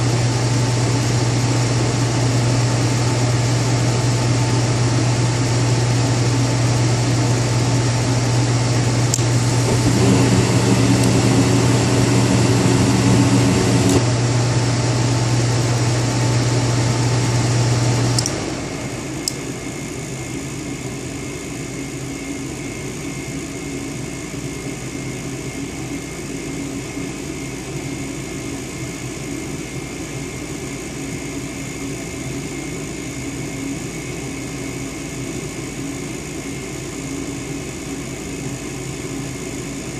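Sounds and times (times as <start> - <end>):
quiet steady whir: 0.0 - 14.2
furnace mechanical hum: 0.0 - 39.9.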